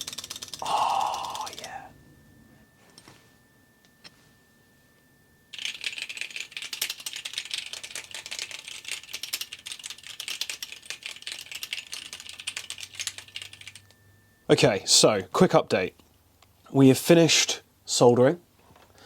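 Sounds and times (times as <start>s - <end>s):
mechanical keyboard typing: 0.0s - 1.8s, 5.6s - 13.9s.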